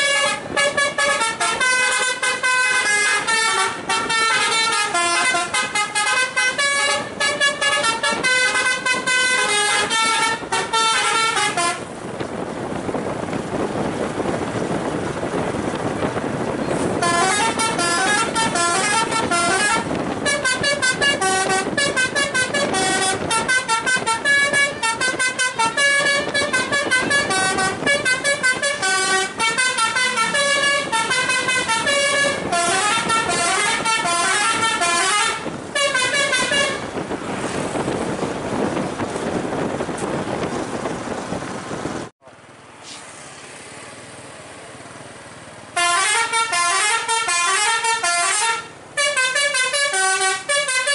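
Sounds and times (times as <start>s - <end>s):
bus horn playing a fast tune: 0.0s - 12.1s, 16.7s - 38.6s, 45.7s - 50.9s
steady rushing noise: 3.2s - 42.2s.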